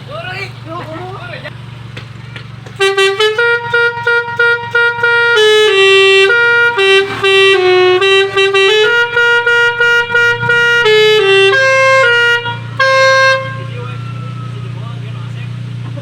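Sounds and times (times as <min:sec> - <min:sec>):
steady low hum: 0:02.8 - 0:13.7
musical car horn playing a tune: 0:02.8 - 0:14.7.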